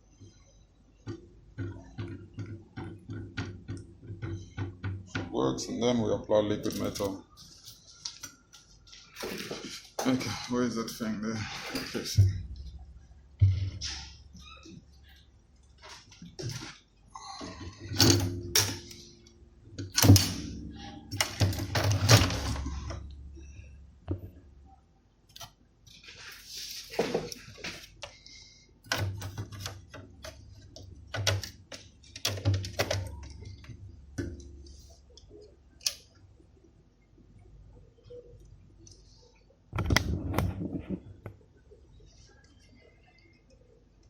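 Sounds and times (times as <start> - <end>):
faint low hum: 0.0 - 44.0.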